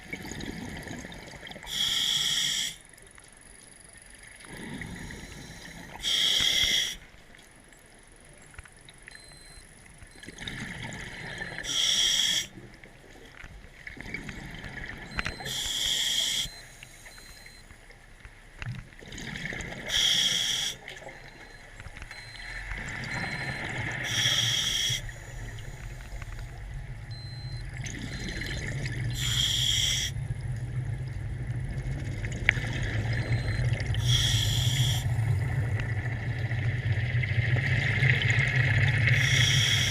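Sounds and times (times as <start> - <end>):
diver inhaling through regulator: 1.7 - 2.8, 4.5 - 7.0, 11.6 - 12.5, 15.4 - 17.5, 19.8 - 20.8, 23.2 - 26.3, 29.1 - 30.2, 34.0 - 35.5, 39.1 - 39.9
exhaled bubbles bursting: 19.0 - 19.9, 27.1 - 29.2, 30.2 - 34.1
low hum: 20.4 - 39.9.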